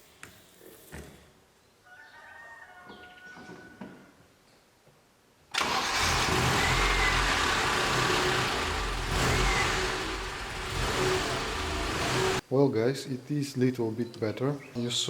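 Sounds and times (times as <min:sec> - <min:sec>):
car engine starting and running: 0:05.6 - 0:12.4.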